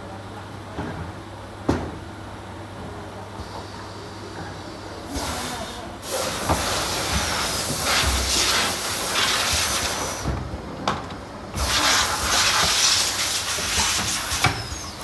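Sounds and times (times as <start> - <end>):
pneumatic air hissing: 5.1 - 10.4, 11.6 - 15.0.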